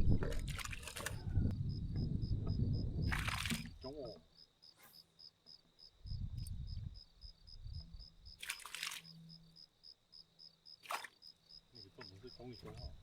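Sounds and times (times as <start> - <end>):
crickets chirping: 0.4 - 13.0
low rumble: 1.4 - 3.2.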